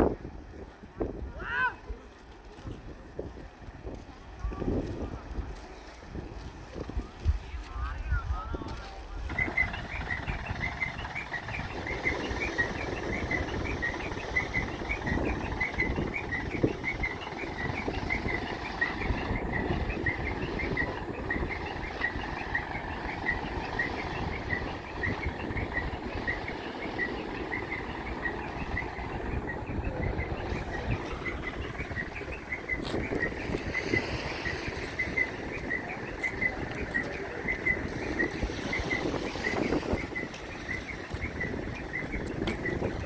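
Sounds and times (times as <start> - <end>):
outdoor rumbling noise: 9.2 - 43.0
bird chirping: 9.3 - 43.0.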